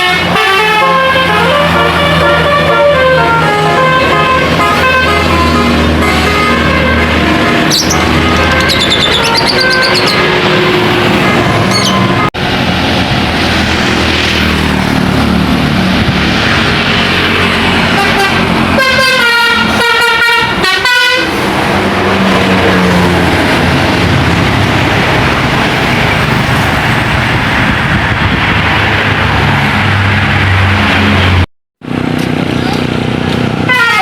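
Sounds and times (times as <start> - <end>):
bus musical horn: 0.0 - 12.3, 17.7 - 23.1, 33.6 - 34.0
heavy vehicles passing: 0.0 - 34.0.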